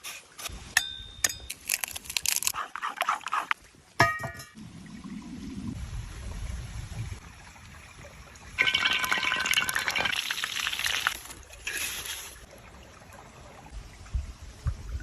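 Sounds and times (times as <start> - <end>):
crackling liquid: 1.5 - 3.7, 7.2 - 12.8.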